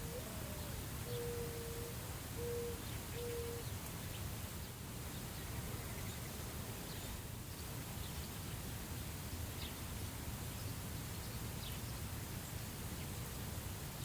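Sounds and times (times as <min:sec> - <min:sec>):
dove cooing: 0:00.0 - 0:03.6.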